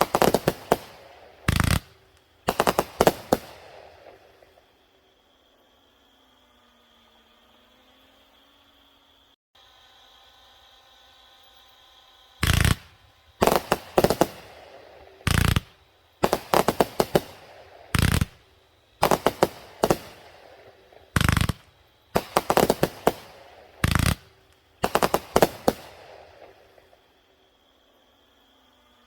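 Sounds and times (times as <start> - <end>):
firework bangs: 0.0 - 4.7, 12.4 - 27.0.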